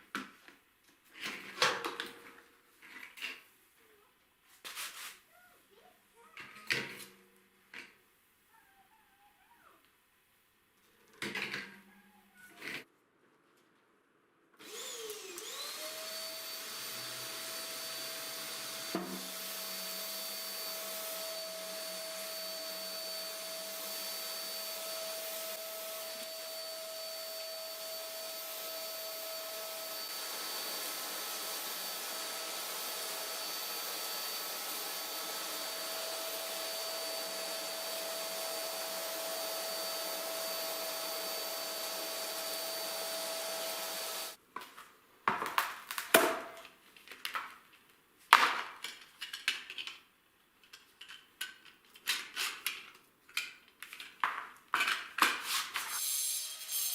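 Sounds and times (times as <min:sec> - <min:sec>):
vacuum cleaner motor whine: 0:14.6 - 0:44.4.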